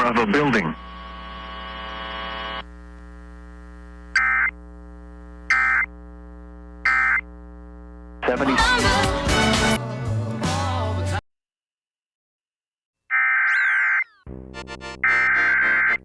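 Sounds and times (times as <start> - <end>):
steady electrical buzz: 0.0 - 8.5
digital data tone bursts: 4.2 - 4.6, 5.5 - 5.9, 6.8 - 7.2, 13.1 - 14.3, 15.0 - 16.0.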